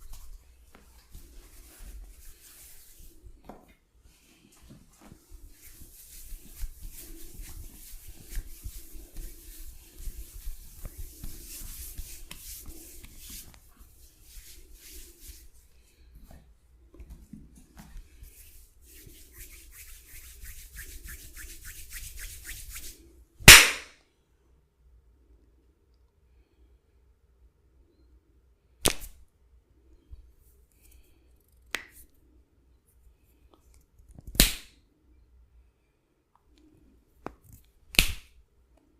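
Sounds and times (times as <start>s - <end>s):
hands rubbing skin and hair: 0.0s - 23.2s
sharp smack: 23.5s - 24.0s.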